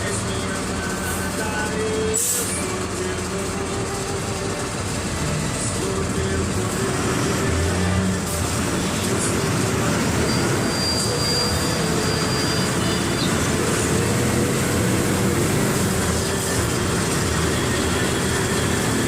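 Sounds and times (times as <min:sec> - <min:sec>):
bus diesel engine running: 0:00.0 - 0:19.0.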